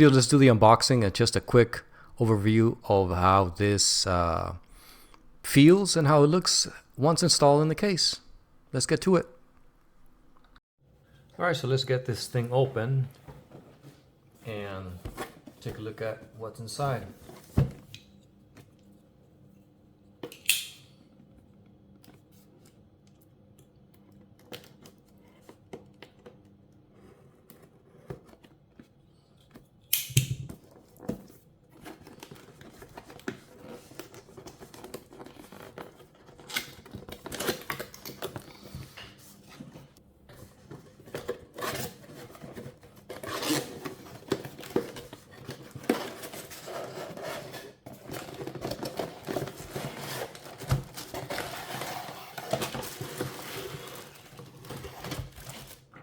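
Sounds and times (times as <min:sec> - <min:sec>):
cardboard box being opened: 0:40.6 - 0:55.8
packaging rustling: 0:47.9 - 0:55.9.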